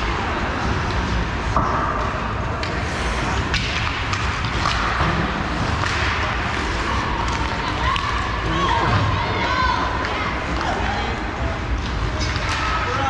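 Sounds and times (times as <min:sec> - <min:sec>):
hockey sticks and puck knocking: 0:03.4 - 0:08.2
indistinct voices: 0:04.8 - 0:13.0.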